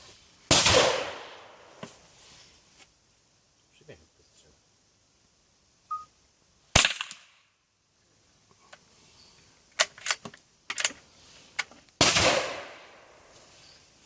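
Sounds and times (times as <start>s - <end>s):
rifle shot: 0.5s - 1.7s, 6.7s - 7.4s, 12.0s - 13.0s
rifle bolt metallic clicks: 9.8s - 11.0s.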